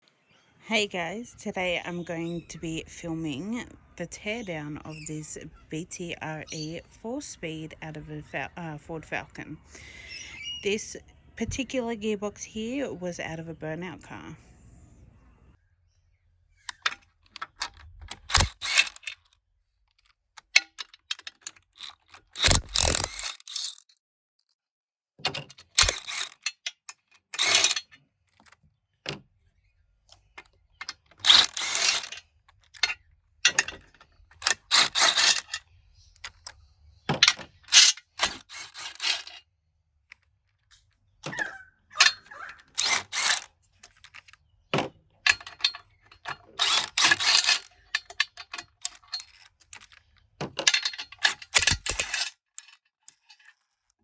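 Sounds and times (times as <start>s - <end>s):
ratchet wrench clicking: 18.2s - 19.0s, 21.8s - 23.8s, 25.7s - 26.4s, 27.4s - 27.8s, 31.2s - 32.1s, 34.4s - 35.6s, 37.7s - 39.3s, 42.8s - 43.5s, 51.2s - 52.2s.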